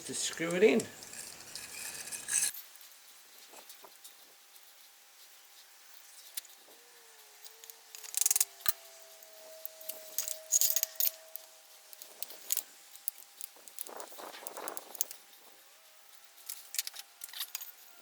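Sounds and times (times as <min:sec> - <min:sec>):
metal screws clinking and rattling: 0:00.0 - 0:02.7, 0:09.9 - 0:15.2.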